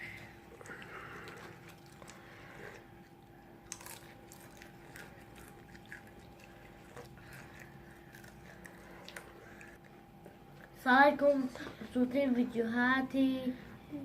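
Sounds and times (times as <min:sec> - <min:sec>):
steady low hum: 0:00.0 - 0:14.0
chewing crunchy fried food: 0:00.1 - 0:10.8.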